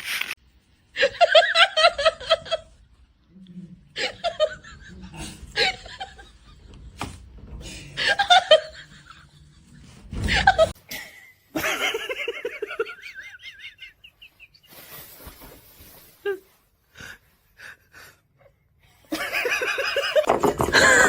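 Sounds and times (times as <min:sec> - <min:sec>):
people laughing: 0:04.0 - 0:07.0, 0:07.8 - 0:10.8.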